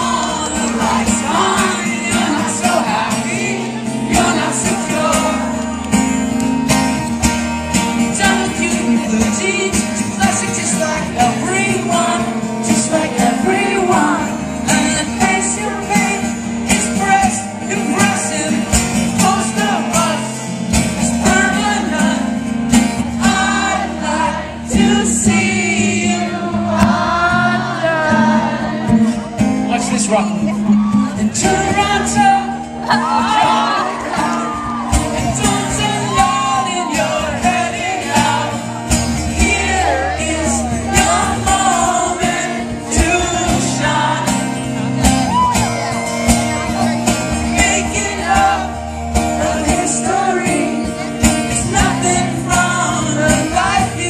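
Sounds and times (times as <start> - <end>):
rock band playing: 0.0 - 54.0
person singing: 7.9 - 20.4, 30.5 - 54.0.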